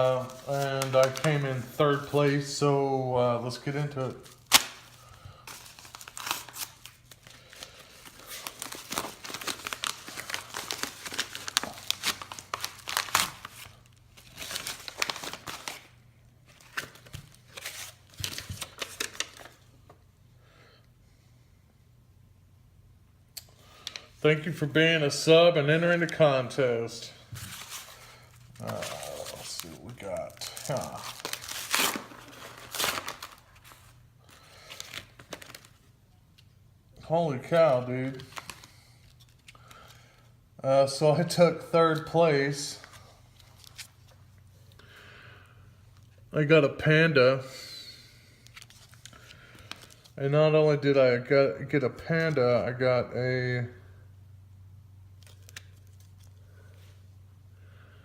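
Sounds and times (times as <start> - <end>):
packing material and tape tearing: 0.0 - 2.0, 4.2 - 15.9, 27.4 - 34.0.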